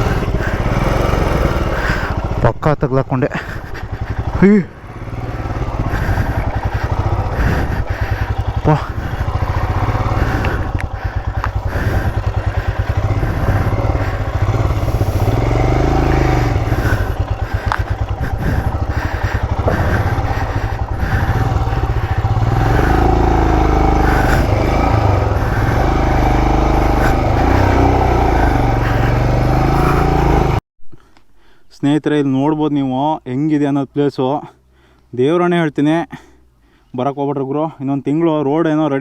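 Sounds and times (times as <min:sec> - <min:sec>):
motorcycle engine revving: 0:00.0 - 0:30.6.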